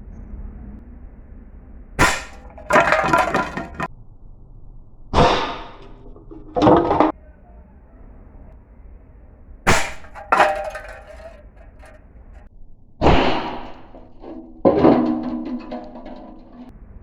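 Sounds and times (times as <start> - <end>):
clattering clanging noise: 2.0 - 3.9, 5.8 - 7.2, 9.7 - 12.5, 13.6 - 16.8.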